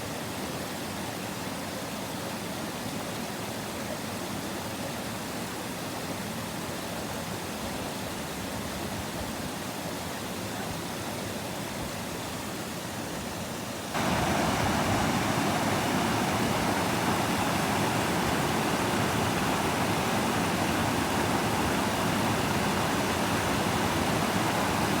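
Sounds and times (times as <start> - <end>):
waterfall rushing: 14.0 - 25.0.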